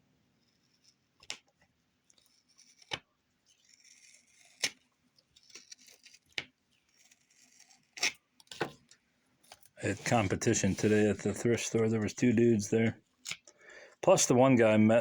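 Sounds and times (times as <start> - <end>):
paper rustling: 8.5 - 12.6.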